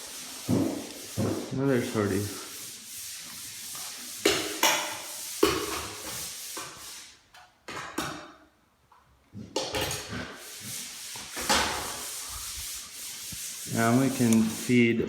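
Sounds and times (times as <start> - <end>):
metal scraping: 10.0 - 15.0.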